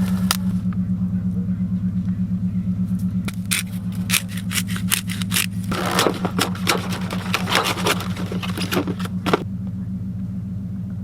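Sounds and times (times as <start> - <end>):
low engine hum: 0.0 - 11.0
grinder clicks: 3.3 - 9.4
seasoning grinder rattling: 3.3 - 9.4.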